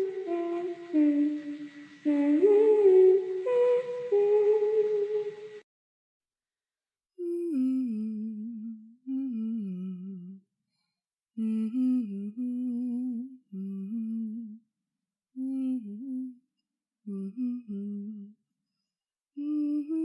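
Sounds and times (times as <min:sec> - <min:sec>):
woman humming: 0:00.0 - 0:05.6, 0:07.2 - 0:10.4.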